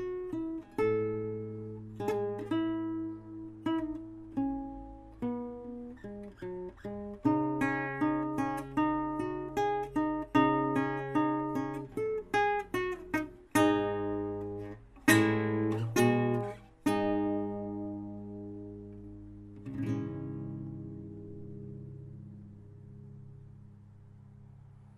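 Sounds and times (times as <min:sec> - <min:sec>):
acoustic guitar playing: 0:00.0 - 0:24.9.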